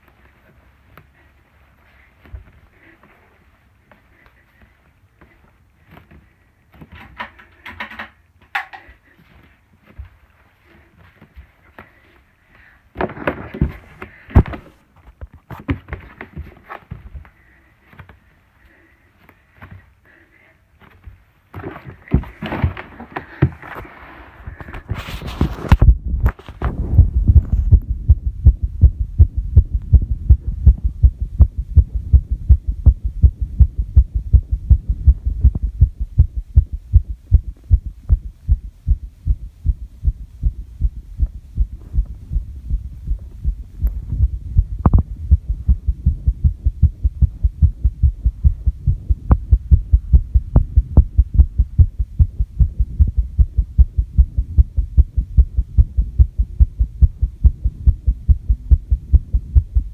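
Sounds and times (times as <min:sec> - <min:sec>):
fast heartbeat thuds: 0:24.5 - 0:59.9.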